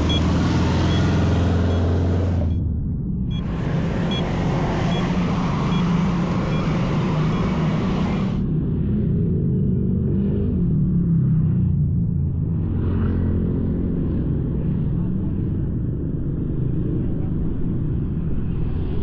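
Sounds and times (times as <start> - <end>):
faint short beeps: 0.0 - 2.6, 3.3 - 8.2
vehicle engine running: 0.0 - 8.9
road traffic noise: 0.0 - 19.0.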